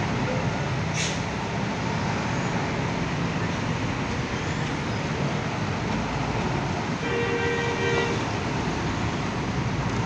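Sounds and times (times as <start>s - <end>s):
bus engines running: 0.0s - 10.0s
two-tone vehicle horn: 7.0s - 8.4s.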